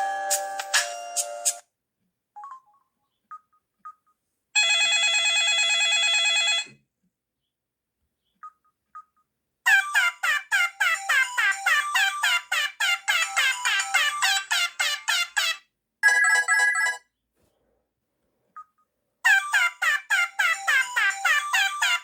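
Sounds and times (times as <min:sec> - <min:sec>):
melodic phone ringtone: 0:00.0 - 0:01.6, 0:09.7 - 0:17.0, 0:19.3 - 0:22.0
ringtone of falling chirps: 0:00.0 - 0:01.6, 0:09.7 - 0:17.0, 0:19.3 - 0:22.0.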